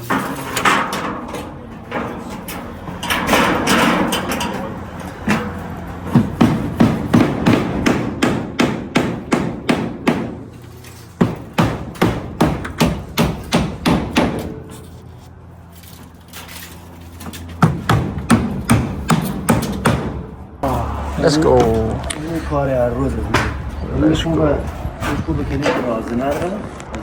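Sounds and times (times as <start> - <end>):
hammer striking nails: 6.1 - 10.5, 11.2 - 14.7, 17.6 - 20.3.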